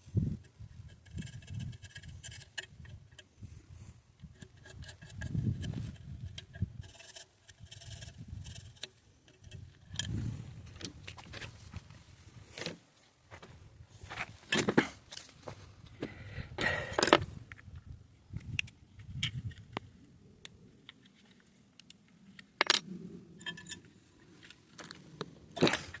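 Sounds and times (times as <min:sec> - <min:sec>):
rubbing on small metal parts: 0:04.4 - 0:10.5.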